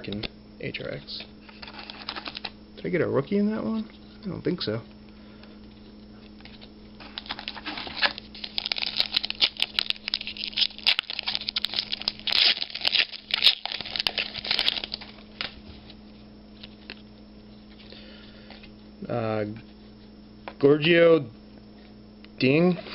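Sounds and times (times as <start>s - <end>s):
faint steady hum: 0.0s - 22.9s
foil wrapper crinkling and tearing: 1.6s - 2.6s, 6.5s - 15.6s.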